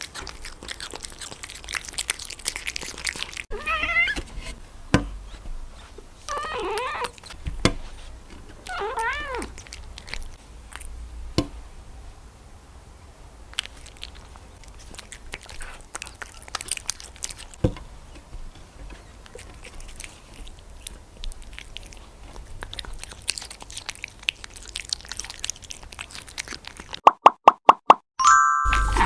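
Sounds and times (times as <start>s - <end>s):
cat crunching food: 0.0s - 3.8s, 6.2s - 11.6s, 13.4s - 27.0s.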